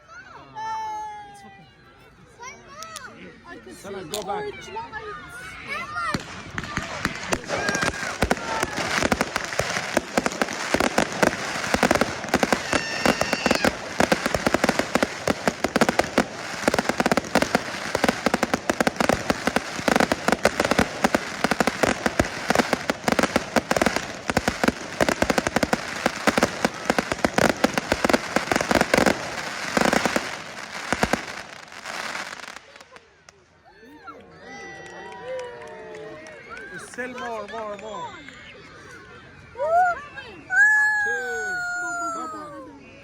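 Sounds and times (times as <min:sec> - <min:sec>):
fireworks crackling and popping: 0:06.0 - 0:33.5.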